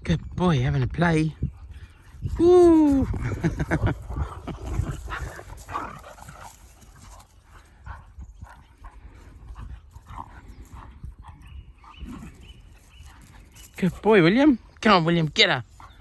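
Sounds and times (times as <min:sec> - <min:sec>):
dogs yipping and whimpering: 0:10.0 - 0:13.8.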